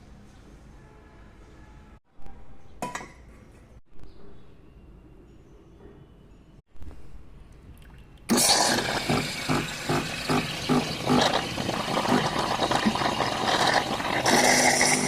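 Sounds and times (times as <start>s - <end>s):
espresso machine pulsing hiss: 8.3s - 15.0s.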